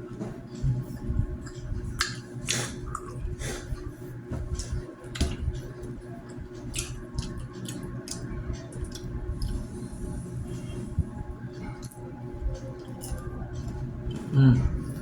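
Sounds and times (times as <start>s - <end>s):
faint background music: 0.0s - 15.0s
snacks clicking and squishing: 1.4s - 3.2s, 4.5s - 9.6s.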